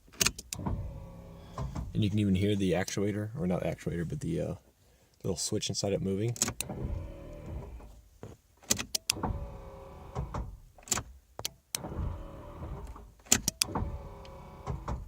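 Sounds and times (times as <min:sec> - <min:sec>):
headlight motors humming: 0:00.6 - 0:01.9, 0:06.6 - 0:07.9, 0:13.7 - 0:14.8.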